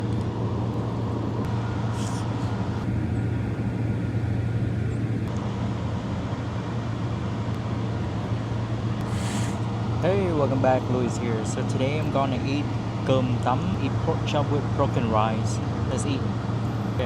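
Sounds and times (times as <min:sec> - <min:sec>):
low-pitched hum: 0:00.0 - 0:17.0
short hiss: 0:09.0 - 0:09.7.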